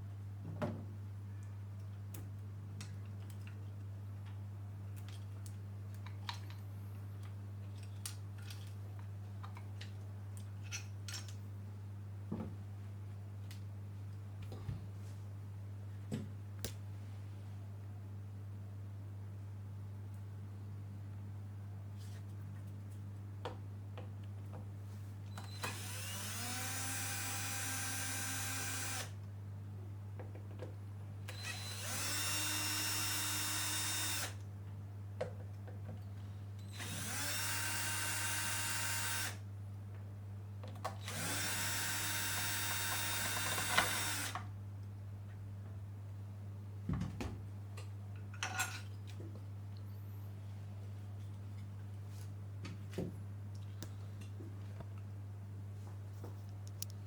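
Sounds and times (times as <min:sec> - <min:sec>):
electric screwdriver whining: 0:25.4 - 0:29.1, 0:31.3 - 0:34.4, 0:36.8 - 0:39.4, 0:41.0 - 0:44.4.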